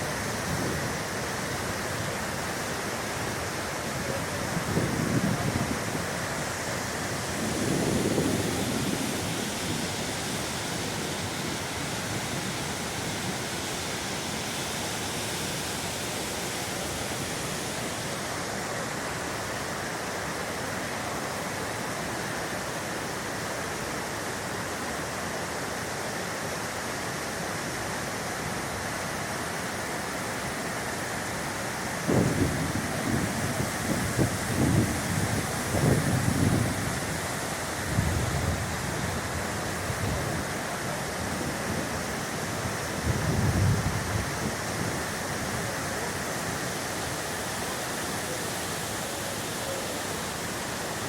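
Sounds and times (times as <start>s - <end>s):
waterfall rushing: 0.0s - 51.0s.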